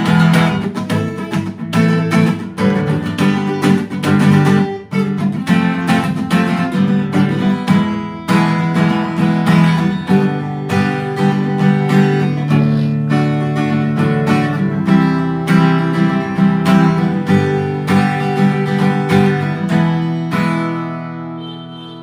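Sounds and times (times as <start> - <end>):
acoustic guitar strummed: 0.0 - 22.0.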